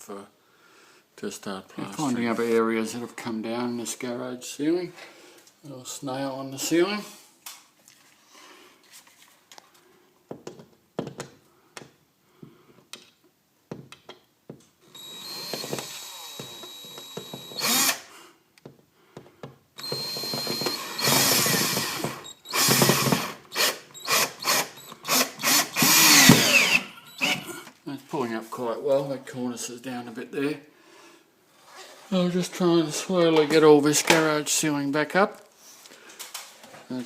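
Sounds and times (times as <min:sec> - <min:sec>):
power drill whining: 0:14.9 - 0:18.1, 0:19.8 - 0:27.7.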